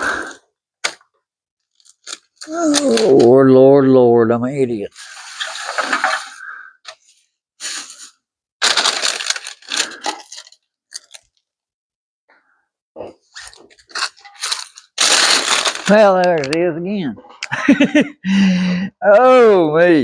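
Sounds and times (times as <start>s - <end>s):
objects rustling and clattering: 5.0s - 7.2s, 7.8s - 11.4s, 13.1s - 16.5s.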